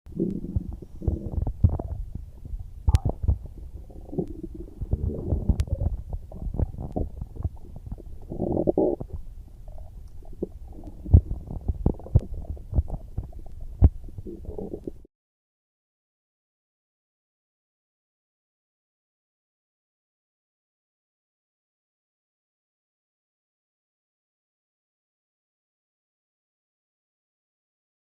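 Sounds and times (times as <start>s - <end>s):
stomach growling and gurgling: 0.1s - 15.1s.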